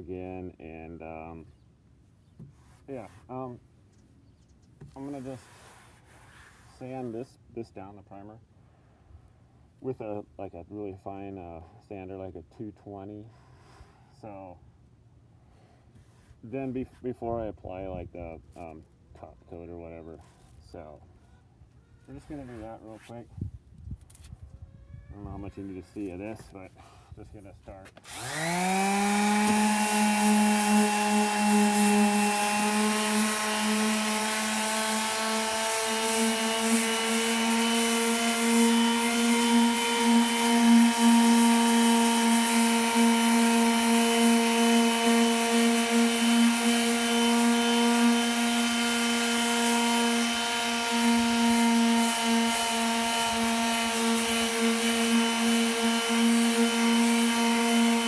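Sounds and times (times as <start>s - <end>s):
electric sander whining: 28.0s - 58.0s.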